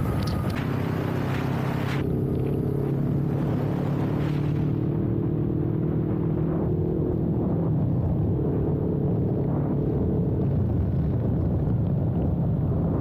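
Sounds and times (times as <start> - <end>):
motorcycle engine running: 0.0 - 5.6
wind rushing over microphone: 0.0 - 13.0.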